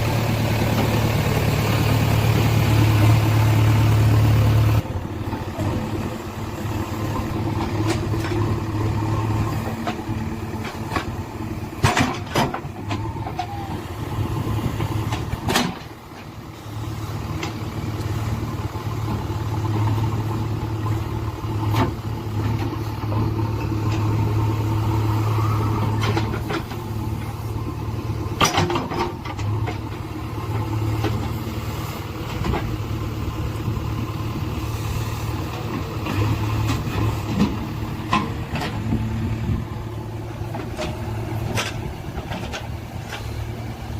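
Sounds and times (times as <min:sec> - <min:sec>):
diesel engine droning: 0:00.0 - 0:43.9.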